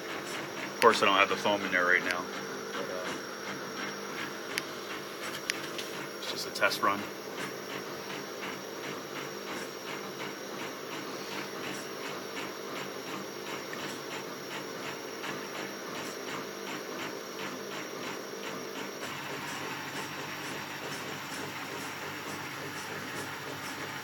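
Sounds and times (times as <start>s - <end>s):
stepper motor hum: 0.0s - 16.8s.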